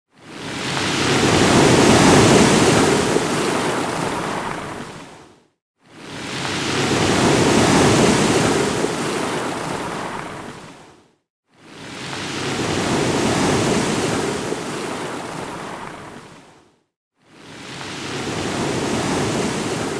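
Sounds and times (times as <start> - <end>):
ocean wave crashing: 0.3 - 5.1, 6.1 - 10.7.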